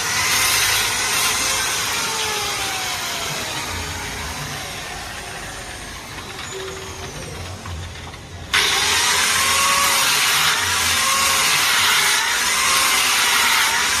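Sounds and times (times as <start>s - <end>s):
chainsaw running: 8.5s - 14.0s.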